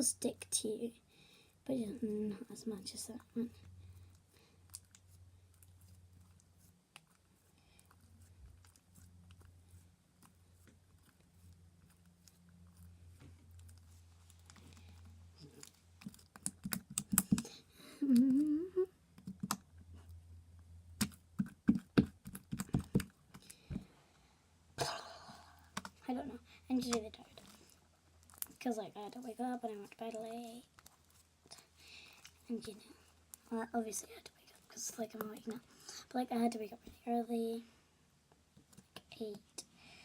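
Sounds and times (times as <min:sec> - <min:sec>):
low electrical hum: 0:00.0 - 0:40.0
sticky slime clicks and pops: 0:16.0 - 0:17.4
low slime squelch: 0:24.8 - 0:36.2.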